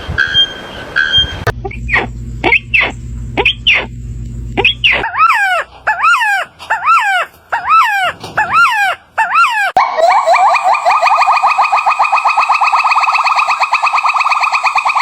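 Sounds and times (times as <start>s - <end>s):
low hum: 0.9s - 6.0s
animal yelping: 4.6s - 10.7s
animal pitched cries: 4.6s - 10.9s.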